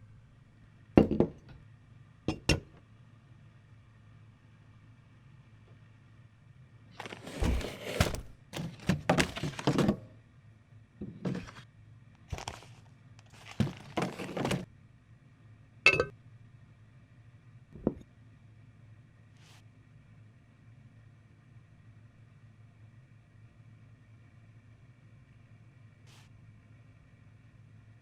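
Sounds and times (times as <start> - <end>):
scraping and rustling: 7.0 - 10.0, 11.2 - 11.6, 12.3 - 14.7.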